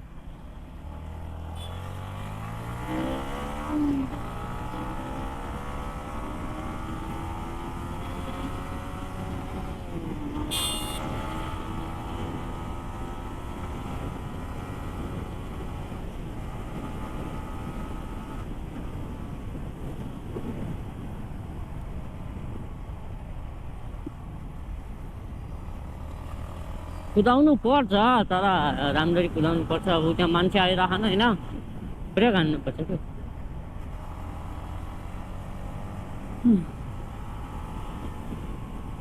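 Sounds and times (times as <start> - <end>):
low wind rumble: 0.0 - 39.0
motorcycle engine revving: 0.7 - 18.5, 33.9 - 39.0.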